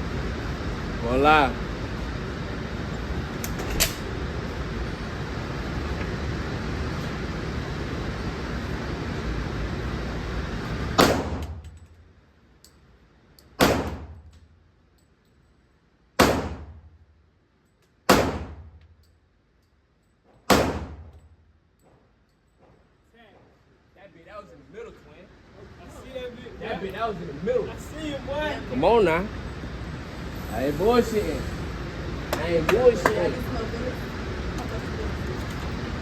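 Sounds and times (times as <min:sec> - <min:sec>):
pistol shots: 0:11.0 - 0:11.6, 0:13.6 - 0:14.2, 0:16.2 - 0:16.8, 0:18.1 - 0:18.7, 0:20.5 - 0:21.1.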